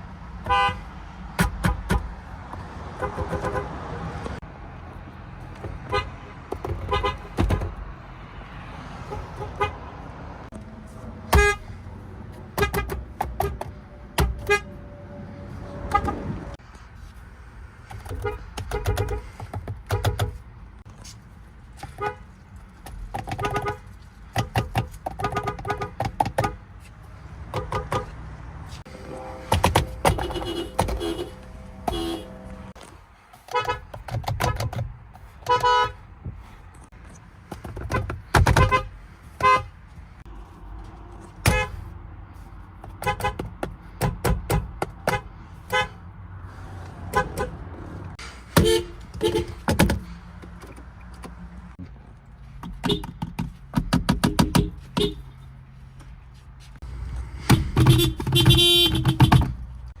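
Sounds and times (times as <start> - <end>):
car horns honking: 0.4 - 2.1, 2.9 - 4.4, 5.7 - 7.8, 8.9 - 10.1, 11.2 - 11.8, 12.4 - 16.6, 18.0 - 20.4, 21.8 - 22.3, 23.2 - 26.7, 27.5 - 32.8, 33.5 - 34.8, 35.4 - 36.0, 37.8 - 41.9, 42.9 - 46.0, 47.1 - 50.2, 52.8 - 53.2, 54.2 - 55.4, 57.4 - 59.6.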